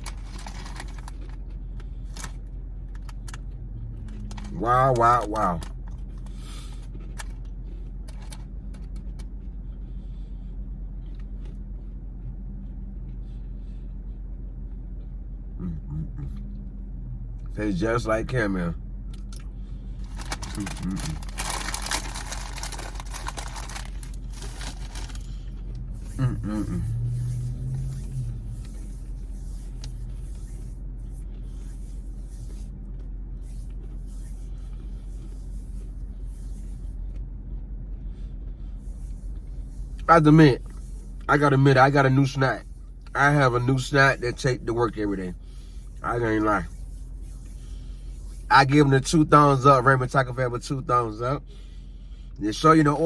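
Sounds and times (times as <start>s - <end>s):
steady low hum: 0.0s - 53.0s
crunchy crisps being chewed: 19.2s - 26.3s.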